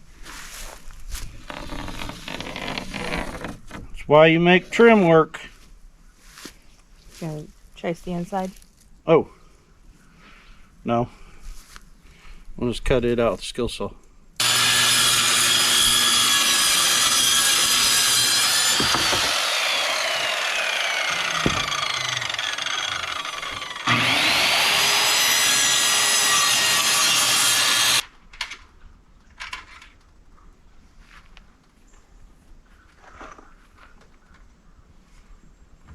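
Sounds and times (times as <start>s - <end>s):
circular saw cutting wood: 14.4s - 28.0s.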